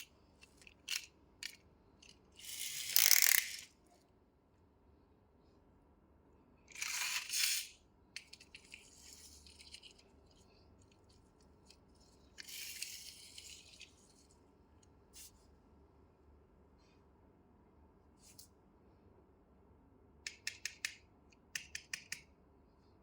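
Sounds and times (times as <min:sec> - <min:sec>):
plastic toy cars rattling: 0:00.0 - 0:03.7, 0:06.7 - 0:14.2.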